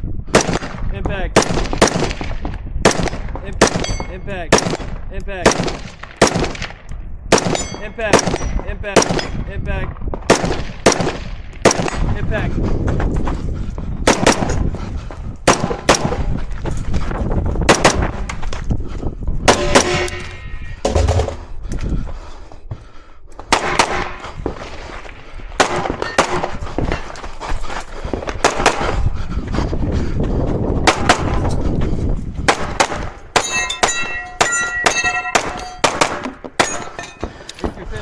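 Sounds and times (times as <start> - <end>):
gunshots: 0.3 - 9.4, 10.2 - 12.4, 14.0 - 14.7, 15.4 - 16.4, 17.7 - 18.3, 19.5 - 21.5, 23.5 - 27.2, 28.3 - 29.1, 30.8 - 31.5, 32.5 - 37.0
steel target ringing: 19.5 - 21.5, 33.4 - 35.8.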